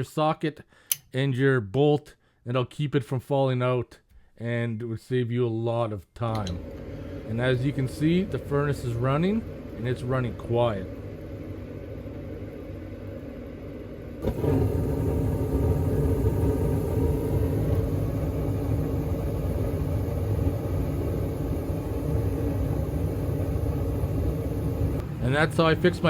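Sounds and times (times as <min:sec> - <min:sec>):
furnace fan motor humming: 0:06.3 - 0:26.0.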